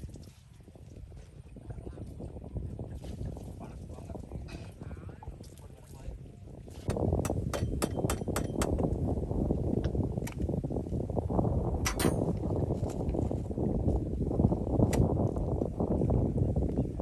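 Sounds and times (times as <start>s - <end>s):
metallic clicks and clanks: 7.3s - 8.8s, 11.8s - 12.3s.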